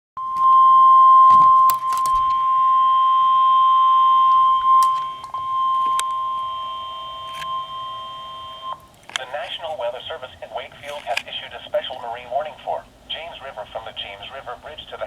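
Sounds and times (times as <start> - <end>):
steady radio alarm tone: 0.2 - 15.0
static crackles: 4.3 - 15.0.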